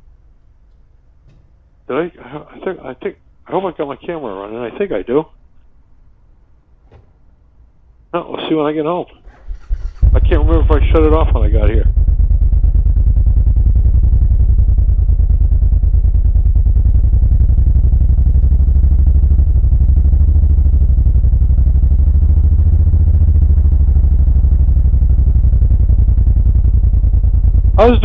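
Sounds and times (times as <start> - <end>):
motorcycle engine running: 9.3 - 28.0.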